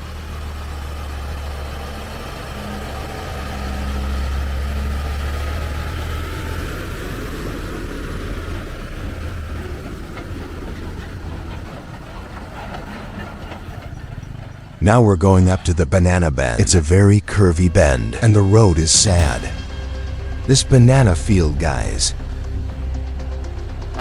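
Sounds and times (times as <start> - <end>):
diesel truck engine labouring: 0.0 - 24.0.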